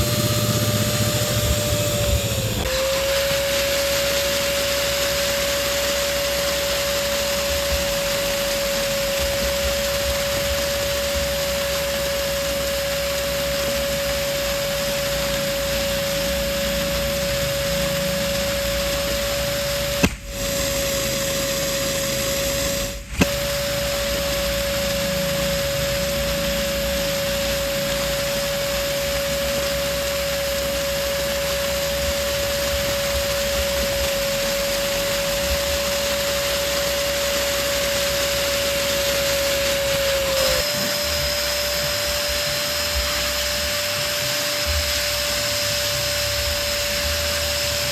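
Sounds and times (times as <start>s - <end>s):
electric balloon pump humming: 0.0s - 47.9s
pump switch click: 20.0s - 20.3s.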